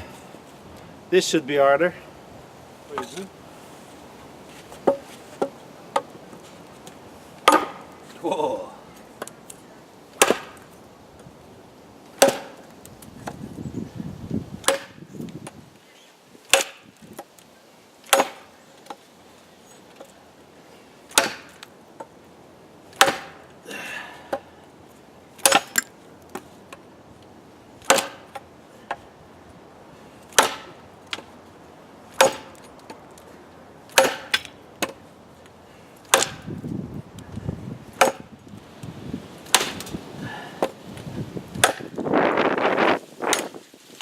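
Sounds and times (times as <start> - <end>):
machete chopping dry wood: 7.4 - 8.0, 10.2 - 10.7, 12.2 - 13.4, 14.6 - 15.6, 16.5 - 17.3, 18.0 - 19.0, 21.1 - 21.7, 22.9 - 23.4, 25.4 - 26.5, 27.8 - 29.0, 30.3 - 31.3, 32.1 - 32.7, 33.9 - 35.0, 36.0 - 36.6, 37.9 - 38.3, 39.4 - 40.0, 41.5 - 42.1, 43.2 - 43.6.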